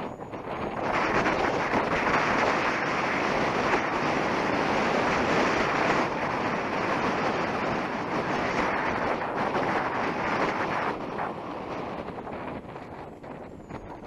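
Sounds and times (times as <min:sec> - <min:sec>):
strong wind on microphone: 0:00.0 - 0:14.0.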